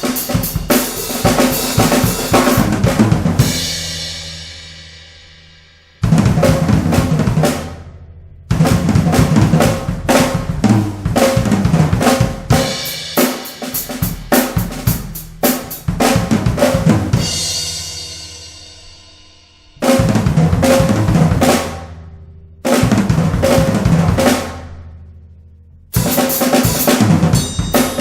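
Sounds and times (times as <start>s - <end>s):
drum strokes: 0.0s - 4.6s, 8.5s - 18.4s, 26.0s - 28.0s.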